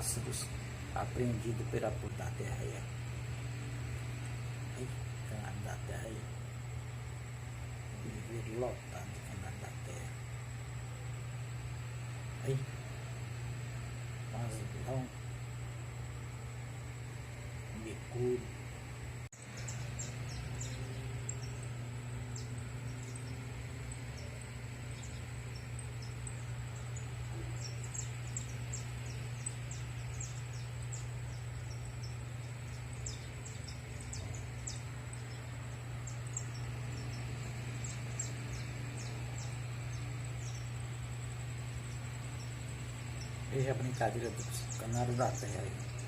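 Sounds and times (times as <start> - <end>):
songbirds chirping: 0.0 - 46.0
steady low hum: 0.0 - 46.0.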